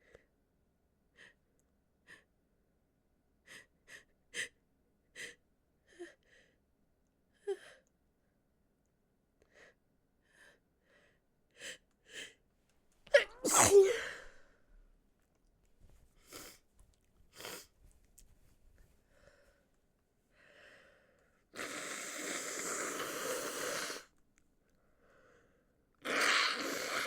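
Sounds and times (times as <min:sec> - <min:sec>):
woman sneezing loudly: 0:13.1 - 0:14.2
woman breathing and sniffing: 0:16.1 - 0:16.7, 0:17.3 - 0:17.8.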